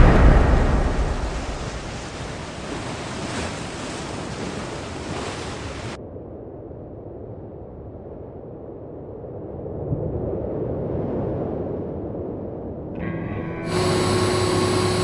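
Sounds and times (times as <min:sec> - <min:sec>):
ocean waves: 0:00.0 - 0:06.0, 0:13.0 - 0:15.0
wind: 0:00.0 - 0:13.1.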